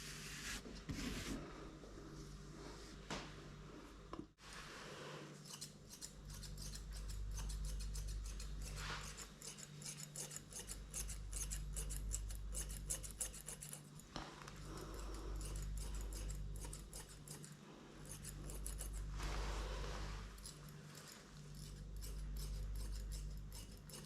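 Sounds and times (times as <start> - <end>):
low steady hum: 0.0 - 24.0
scissors snipping fur: 5.4 - 19.1, 20.4 - 24.0.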